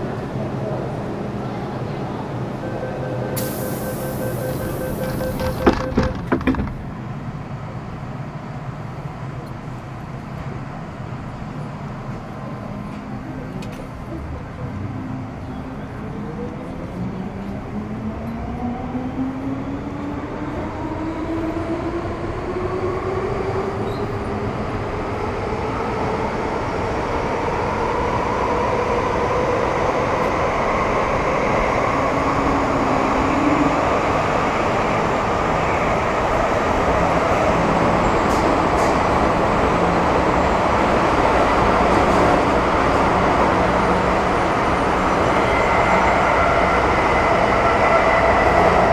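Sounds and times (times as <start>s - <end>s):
wheel and track rumble: 3.3s - 7.2s.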